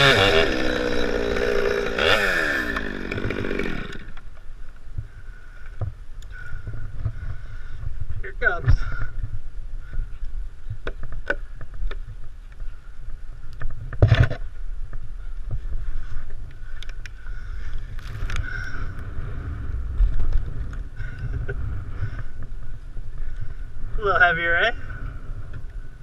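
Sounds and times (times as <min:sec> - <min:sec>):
wind rumble on microphone: 0:04.4 - 0:26.0
knocks and creaks: 0:13.6 - 0:14.6.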